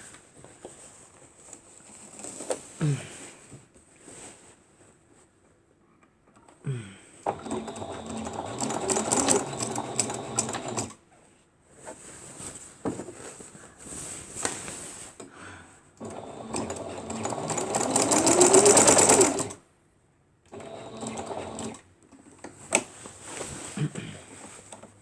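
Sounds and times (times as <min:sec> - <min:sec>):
sewing machine stitching: 0:07.3 - 0:11.0, 0:16.0 - 0:19.6, 0:20.5 - 0:21.8.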